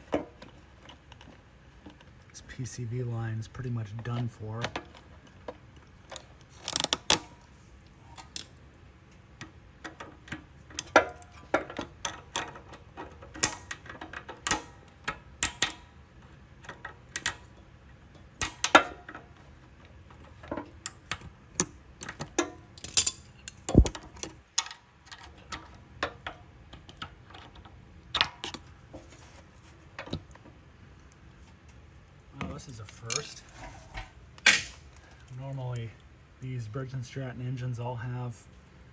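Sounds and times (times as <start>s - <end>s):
tools and metal parts clicking: 20.2s - 28.7s, 32.8s - 33.5s.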